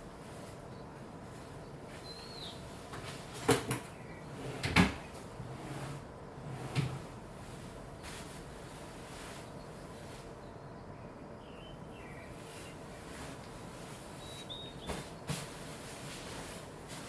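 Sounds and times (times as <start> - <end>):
bird chirp: 1.6 - 2.8, 3.8 - 4.4, 9.3 - 13.0, 14.1 - 15.3.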